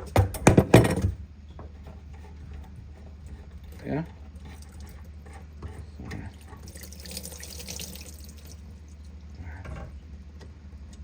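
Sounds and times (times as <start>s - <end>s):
water trickling and splashing: 6.3s - 8.9s.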